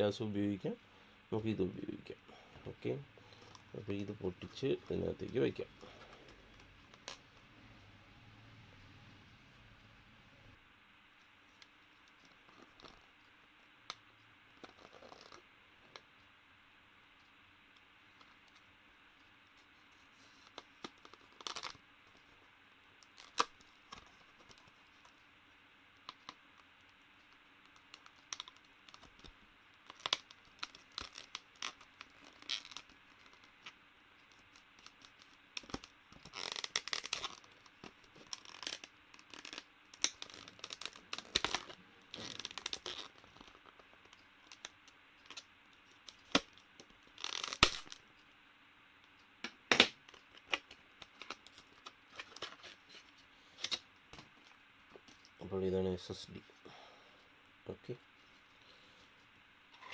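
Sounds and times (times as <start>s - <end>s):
packaging tearing and crinkling: 27.9s - 33.5s, 34.8s - 43.7s, 46.1s - 48.0s.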